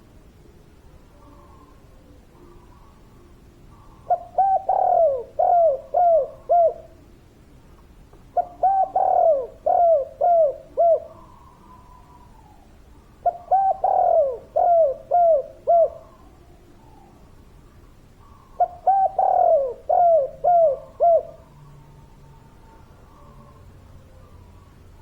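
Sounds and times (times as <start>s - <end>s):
dove cooing: 1.2s - 7.1s, 8.4s - 17.3s, 18.2s - 22.1s.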